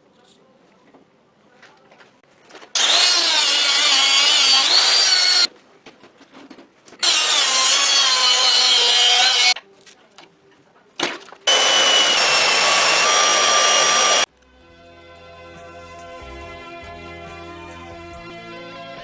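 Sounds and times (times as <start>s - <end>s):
power tool whining: 2.8s - 5.5s, 7.0s - 9.6s, 11.5s - 14.3s.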